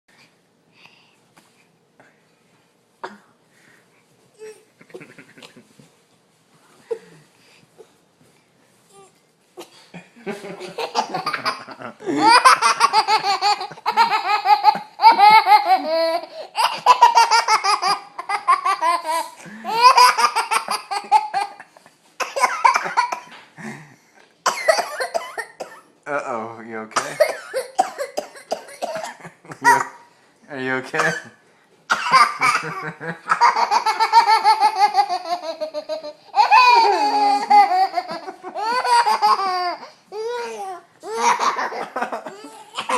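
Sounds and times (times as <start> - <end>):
child laughing: 10.6 - 23.3, 32.2 - 42.9
child squealing: 36.5 - 37.4.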